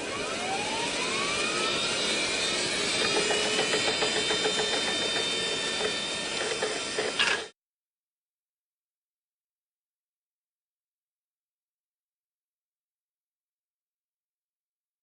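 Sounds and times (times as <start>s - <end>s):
machine spooling up with a whine: 0.0s - 7.5s.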